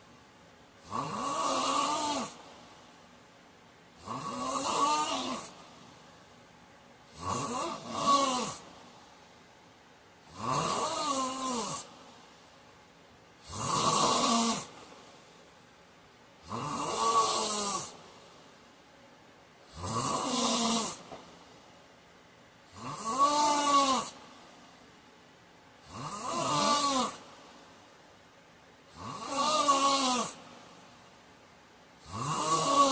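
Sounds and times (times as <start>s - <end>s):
man snoring: 0.8s - 2.4s, 4.0s - 5.8s, 7.1s - 8.8s, 10.2s - 12.0s, 13.4s - 15.0s, 16.4s - 18.0s, 19.6s - 21.2s, 22.7s - 24.2s, 25.8s - 27.3s, 28.9s - 30.4s, 32.0s - 32.9s.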